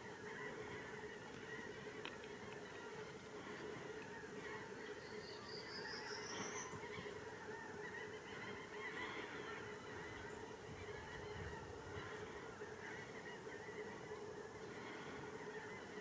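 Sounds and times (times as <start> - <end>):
birds chattering: 0.0 - 16.0.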